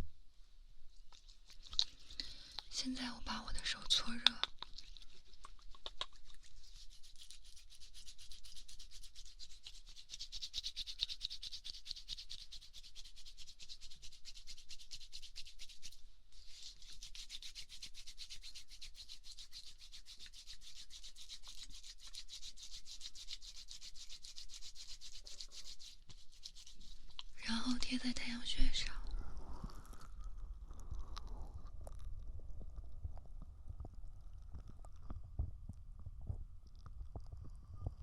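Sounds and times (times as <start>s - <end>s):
hands rubbing together: 5.7s - 27.6s.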